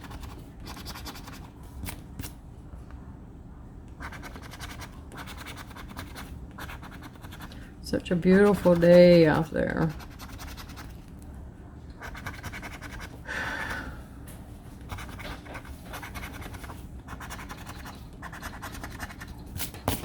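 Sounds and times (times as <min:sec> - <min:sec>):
lottery ticket being scratched: 0:00.0 - 0:02.3, 0:04.0 - 0:11.0, 0:12.0 - 0:13.2, 0:14.9 - 0:19.8.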